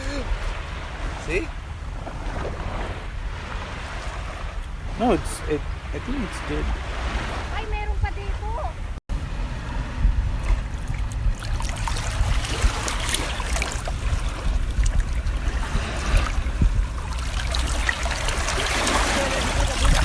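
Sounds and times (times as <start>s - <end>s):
small waves washing on sand: 0.0s - 8.7s, 10.3s - 20.0s
steady low rumble: 7.8s - 20.0s.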